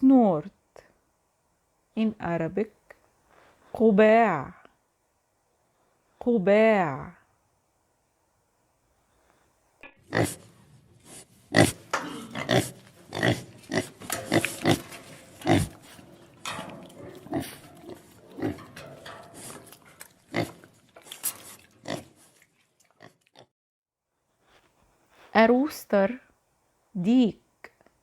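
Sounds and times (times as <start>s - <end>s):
pig snorting: 10.0s - 23.5s.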